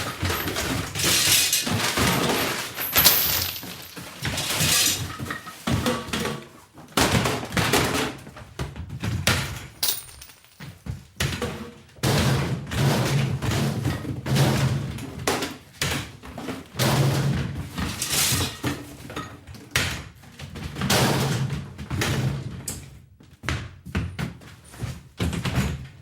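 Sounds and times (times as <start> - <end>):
objects clattering and crashing: 0.0 - 5.6, 9.8 - 10.7.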